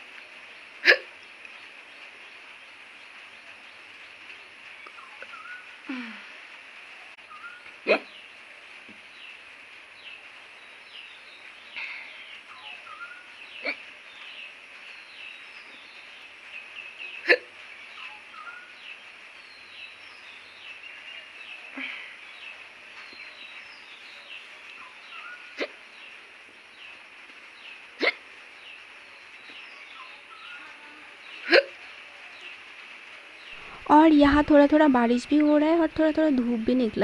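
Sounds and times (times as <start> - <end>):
birds chirping: 0.0 - 37.0
woman hiccuping: 0.8 - 1.1, 7.9 - 8.1, 17.2 - 17.5, 28.0 - 28.2, 31.4 - 31.8.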